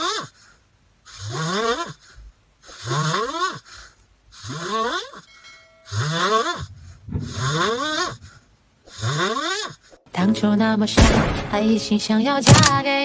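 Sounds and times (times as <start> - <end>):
loud rasping snoring: 0.0 - 0.4, 1.1 - 5.3, 5.9 - 10.0.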